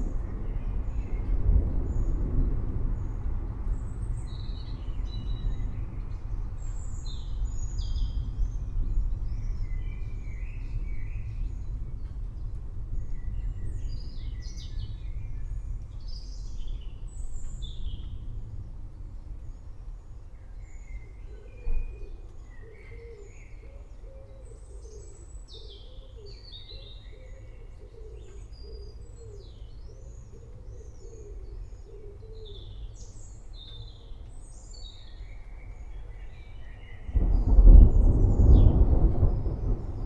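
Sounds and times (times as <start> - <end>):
thunder rumbling: 0.0 - 19.3, 37.0 - 40.0
small birds chirping: 19.4 - 40.0.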